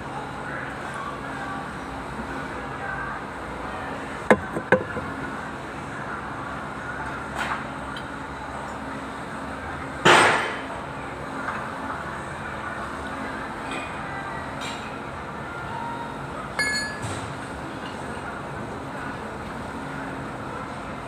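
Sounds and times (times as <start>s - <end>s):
metal tools clinking: 16.6s - 17.1s.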